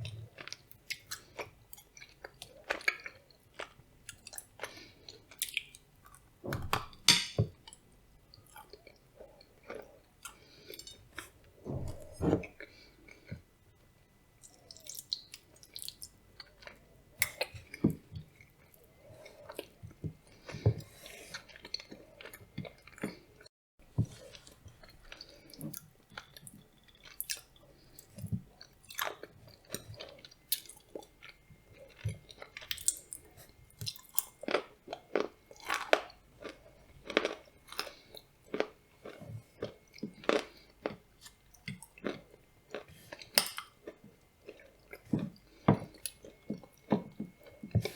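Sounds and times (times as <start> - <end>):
wet mouth chewing and crunching: 14.4 - 17.8, 24.2 - 47.9.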